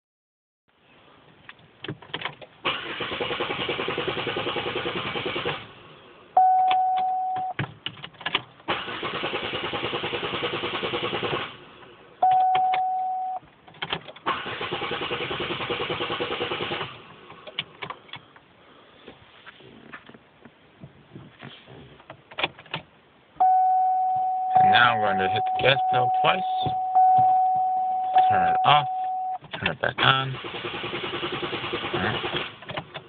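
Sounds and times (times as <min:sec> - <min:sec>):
car starter cranking engine: 0:02.2 - 0:05.8, 0:07.8 - 0:11.6, 0:13.7 - 0:18.3, 0:29.4 - 0:33.0
steady beep: 0:06.4 - 0:07.6, 0:12.2 - 0:13.4, 0:23.4 - 0:29.4.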